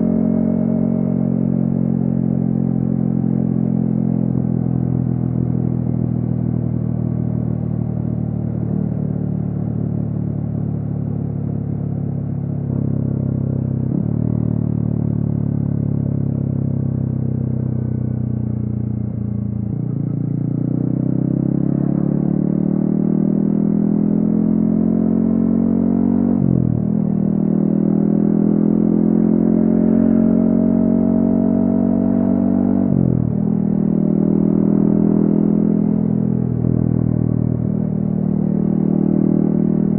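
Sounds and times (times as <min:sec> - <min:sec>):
motorcycle engine revving: 0:19.1 - 0:39.9.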